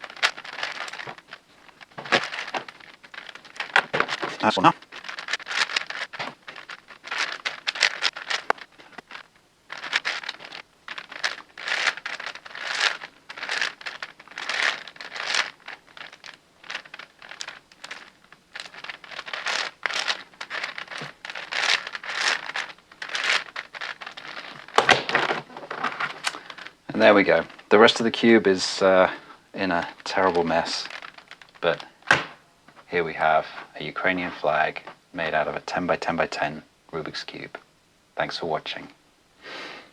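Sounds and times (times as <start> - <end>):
puzzle cube layers scraping and clicking: 0.0 - 9.2, 9.8 - 29.0.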